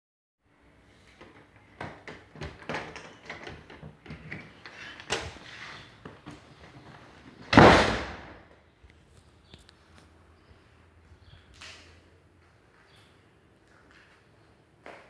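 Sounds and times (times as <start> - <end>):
door opening or shutting: 1.2 - 8.4.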